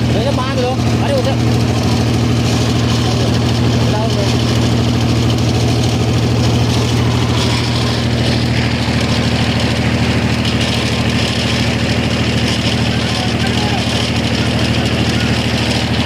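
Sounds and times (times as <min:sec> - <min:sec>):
diesel generator running: 0:00.0 - 0:16.0.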